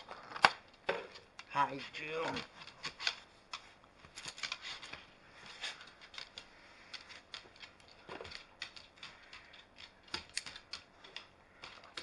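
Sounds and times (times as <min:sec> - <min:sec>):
plastic pieces clicking together: 0:05.8 - 0:12.0.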